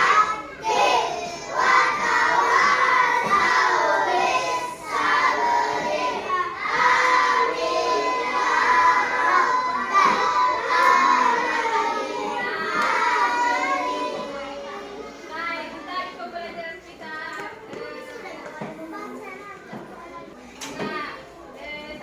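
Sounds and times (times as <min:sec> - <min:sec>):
children singing together: 0:00.0 - 0:15.3
children shouting: 0:00.0 - 0:15.9.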